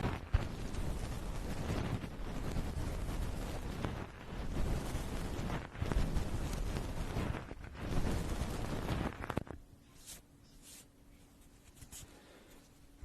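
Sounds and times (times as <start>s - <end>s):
wind-like rushing on microphone: 0.0s - 9.6s
faint steady hum: 0.0s - 13.0s
soft hissing strokes: 0.0s - 13.0s.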